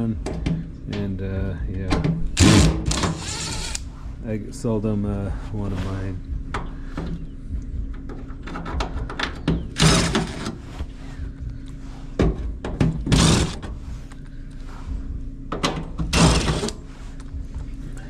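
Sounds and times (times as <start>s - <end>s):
sheet metal parts clicking and thunking: 7.9s - 10.5s.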